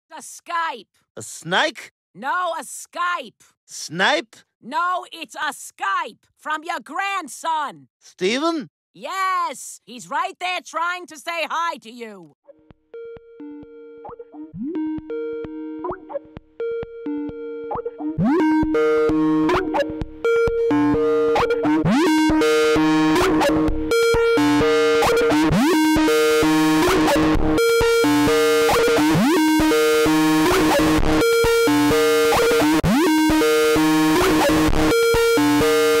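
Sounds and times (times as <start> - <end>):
distorted call ringtone: 12.5 - 36.0.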